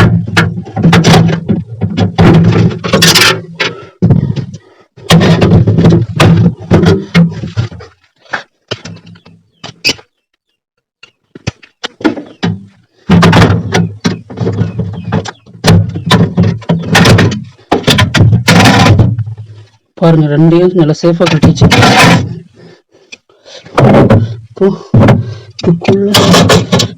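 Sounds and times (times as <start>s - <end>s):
clicks and knocks: 11.0s - 19.4s.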